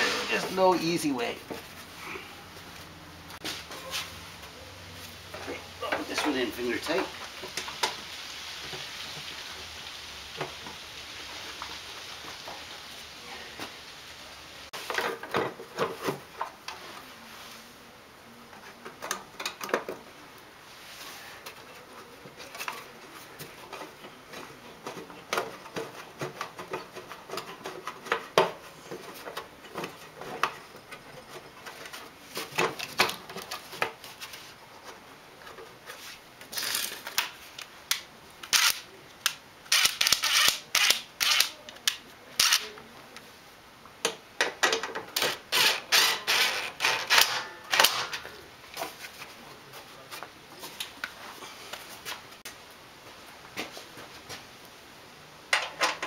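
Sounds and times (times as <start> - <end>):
hand tools clicking and knocking: 44.0 - 48.4.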